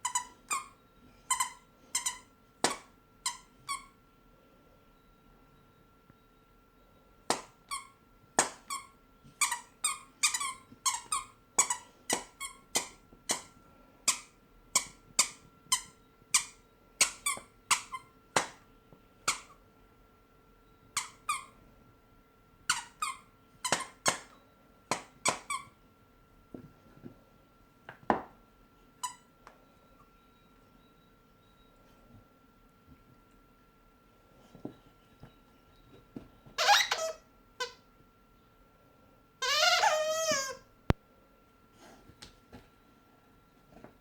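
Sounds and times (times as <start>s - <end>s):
faint steady whine: 0.0s - 44.0s
short sharp squeaks: 36.6s - 37.2s.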